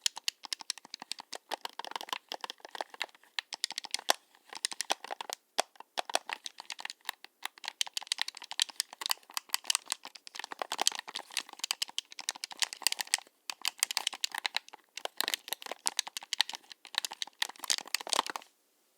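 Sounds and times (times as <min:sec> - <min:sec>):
game controller buttons clicking: 0:00.0 - 0:18.4.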